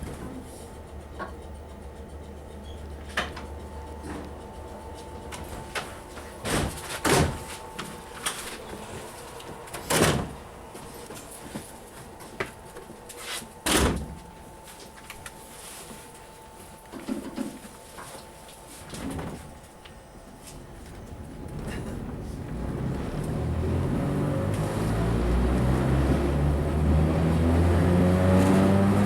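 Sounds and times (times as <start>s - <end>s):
train doors slamming shut: 5.4s - 7.7s, 9.7s - 10.4s, 13.6s - 14.2s
deeper hum: 20.6s - 29.0s.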